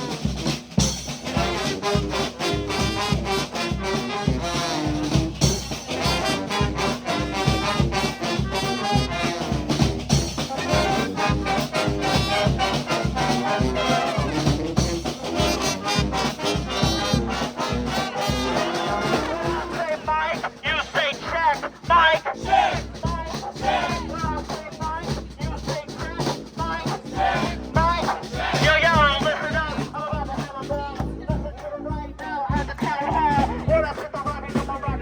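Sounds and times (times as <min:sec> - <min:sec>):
brass band playing: 0:00.0 - 0:35.0
percussive beat: 0:00.0 - 0:35.0.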